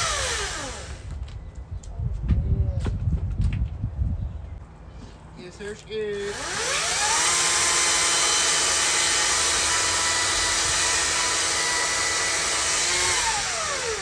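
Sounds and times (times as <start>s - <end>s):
power tool motor whine: 0.0s - 1.2s, 6.2s - 14.0s.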